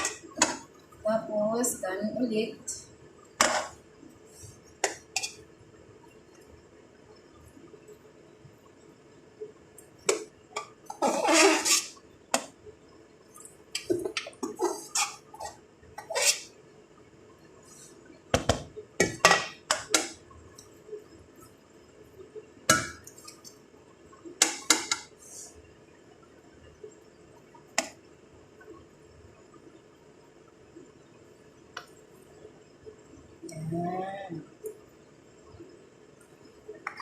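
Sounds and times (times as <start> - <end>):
spoon scraping a pot: 4.8 - 5.4, 10.6 - 12.0, 14.4 - 16.6.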